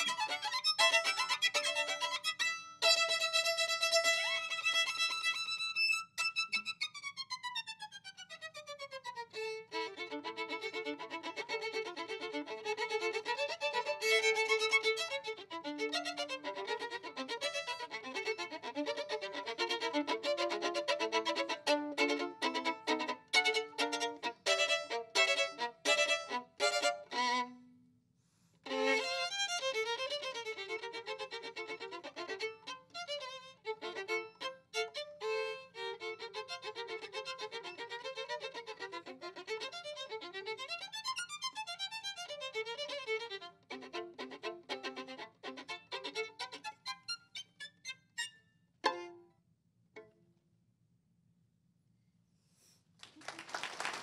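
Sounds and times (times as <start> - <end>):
violin playing fast notes: 0.0 - 27.6, 28.7 - 48.0.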